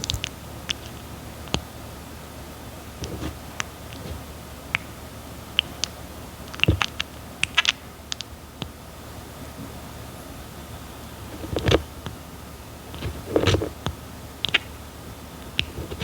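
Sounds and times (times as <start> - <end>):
tortoise wet bites and clicks: 0.0 - 1.7, 5.6 - 8.8, 13.0 - 14.7.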